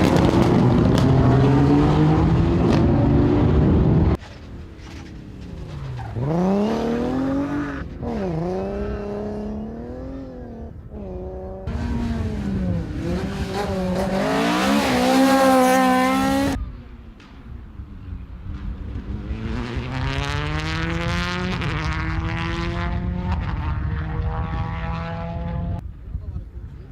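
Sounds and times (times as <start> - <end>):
car engine revving: 0.0 - 4.2, 4.9 - 16.6, 18.6 - 25.8.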